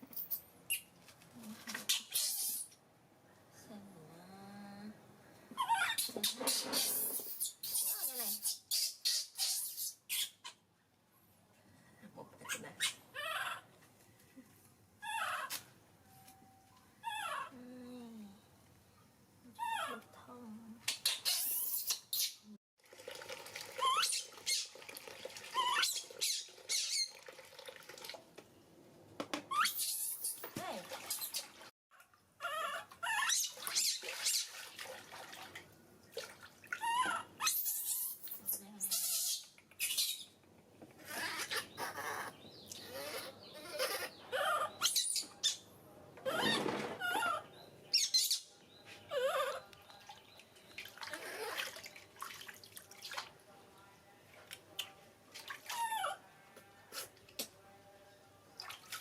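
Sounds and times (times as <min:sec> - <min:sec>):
baby monkey squeaking: 0:01.9 - 0:02.8, 0:05.6 - 0:10.6, 0:12.4 - 0:13.6, 0:15.0 - 0:15.6, 0:17.0 - 0:17.5, 0:19.6 - 0:20.0, 0:20.8 - 0:22.5, 0:25.6 - 0:27.1, 0:29.5 - 0:30.5, 0:32.4 - 0:34.5, 0:36.8 - 0:40.3, 0:41.0 - 0:45.6, 0:46.2 - 0:48.5, 0:49.1 - 0:49.6.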